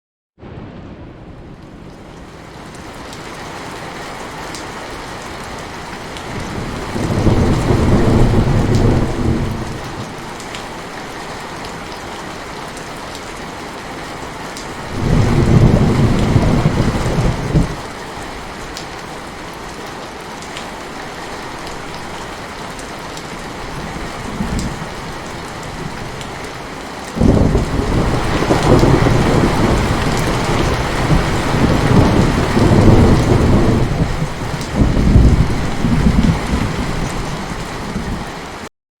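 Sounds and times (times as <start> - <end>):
thunder rumbling: 0.4 - 3.1, 6.2 - 10.4, 14.8 - 17.9, 23.5 - 26.6, 27.2 - 38.3
heavy rain falling: 0.4 - 38.7.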